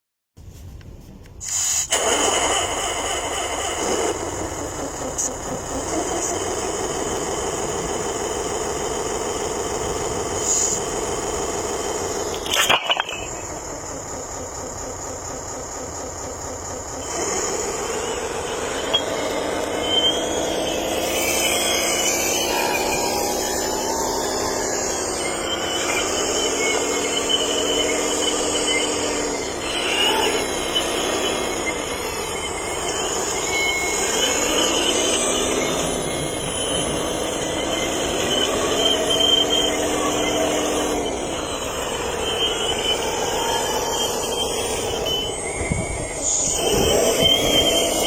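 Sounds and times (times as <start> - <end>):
hydraulic pump whining: 1.2 - 48.0.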